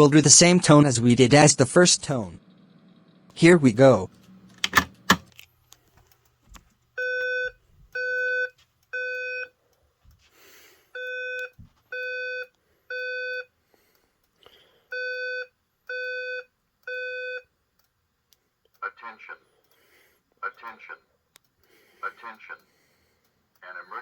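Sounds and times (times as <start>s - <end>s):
fire alarm beeping: 7.0s - 9.5s, 11.0s - 13.5s, 14.9s - 17.5s.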